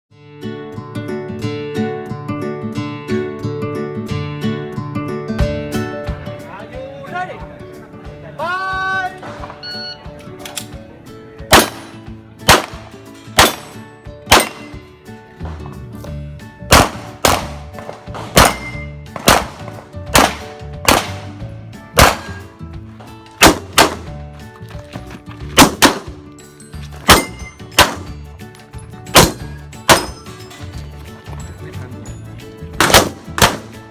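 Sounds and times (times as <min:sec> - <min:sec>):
background music: 0:00.2 - 0:33.9
handgun shots: 0:11.5 - 0:14.8, 0:16.7 - 0:21.4, 0:22.0 - 0:22.4, 0:23.4 - 0:24.1, 0:25.6 - 0:26.2, 0:27.0 - 0:28.2, 0:29.1 - 0:30.3, 0:32.8 - 0:33.8.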